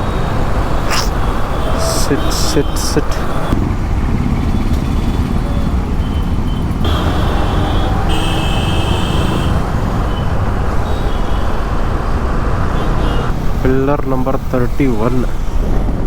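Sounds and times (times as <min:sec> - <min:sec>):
high steady horn tone: 0:00.0 - 0:03.6, 0:05.3 - 0:11.8, 0:12.7 - 0:13.3
motorcycle engine rumble: 0:00.0 - 0:16.0.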